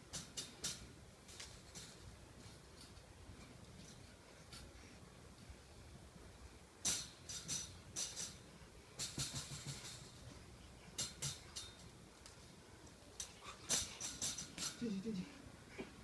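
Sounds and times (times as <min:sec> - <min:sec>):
wire cage rattling and clicking: 0:00.0 - 0:04.7, 0:06.8 - 0:08.4, 0:09.0 - 0:15.0.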